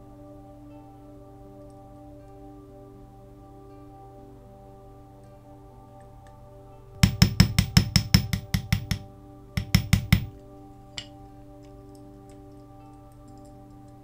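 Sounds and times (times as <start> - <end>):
soft background music: 0.0 - 14.0
small hammer tapping metal: 7.0 - 9.0, 9.6 - 10.4.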